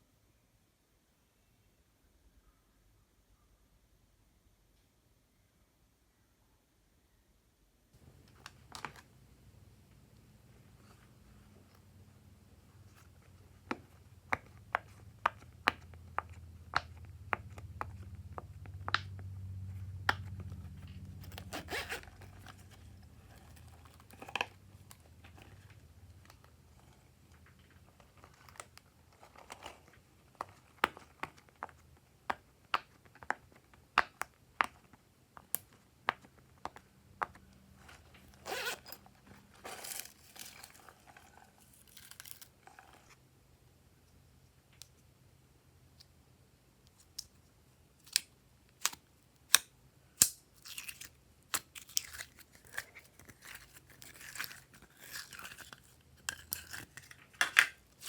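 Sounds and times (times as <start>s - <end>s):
slime crackling and tearing: 50.2s - 58.0s.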